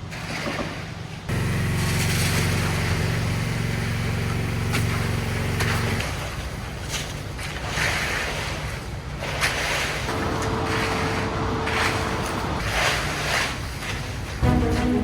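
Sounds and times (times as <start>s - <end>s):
engine running: 1.3s - 7.2s, 10.1s - 12.9s, 14.2s - 15.0s.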